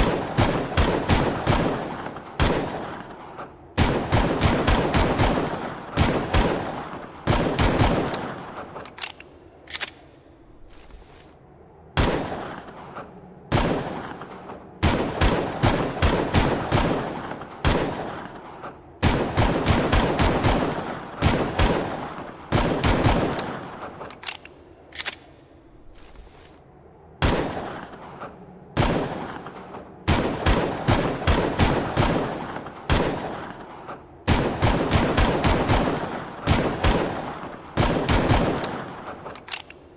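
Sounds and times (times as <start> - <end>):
rapid pistol gunshots: 0.0 - 8.9, 13.5 - 24.1, 27.2 - 28.2, 28.8 - 39.4.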